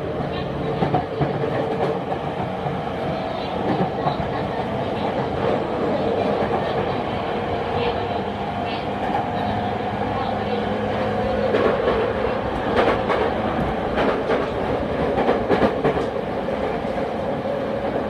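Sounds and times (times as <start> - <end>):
train wheels rumbling on rail: 0.0 - 18.0
wheels clacking over rail joints: 11.2 - 16.8.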